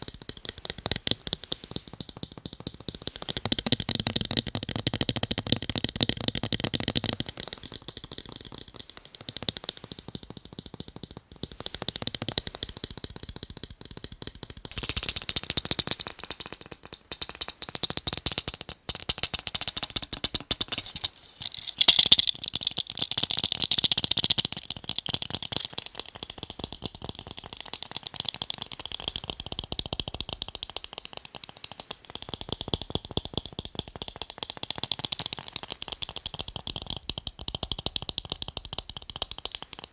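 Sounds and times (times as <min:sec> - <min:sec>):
fingernail tapping on glasses: 0:14.7 - 0:29.4.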